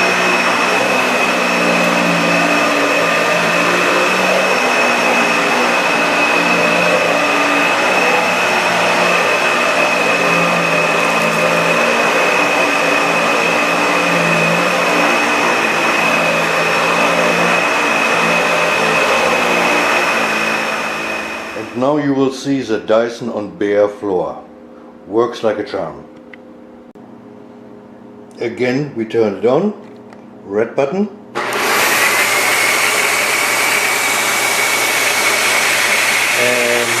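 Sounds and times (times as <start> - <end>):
upright vacuum cleaner running: 0.0 - 22.6, 31.3 - 37.0.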